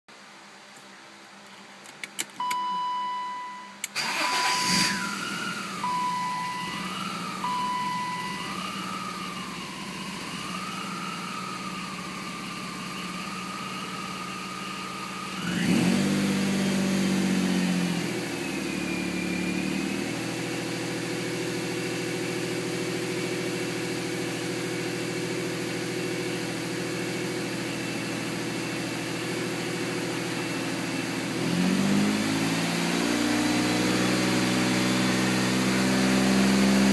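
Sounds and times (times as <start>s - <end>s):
short high beeps: 2.4s - 5.0s, 5.8s - 8.8s
car engine rough idle: 4.0s - 31.4s.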